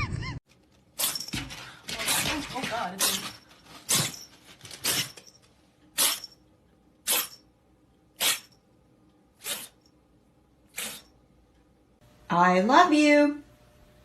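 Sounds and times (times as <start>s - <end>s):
cat sneezing: 6.0s - 6.3s, 7.0s - 7.4s, 8.2s - 8.5s, 9.4s - 9.8s, 10.7s - 11.1s.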